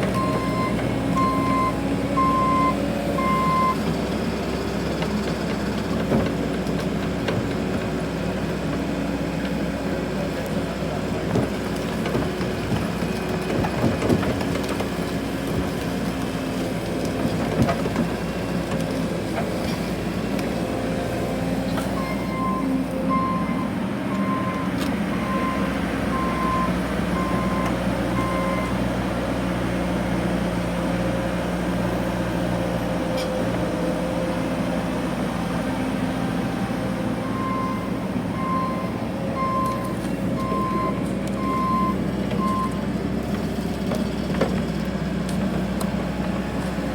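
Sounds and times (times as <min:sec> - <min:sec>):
excavator diesel engine running: 0:00.0 - 0:46.9
travel alarm beeping: 0:00.2 - 0:03.8, 0:37.3 - 0:42.8.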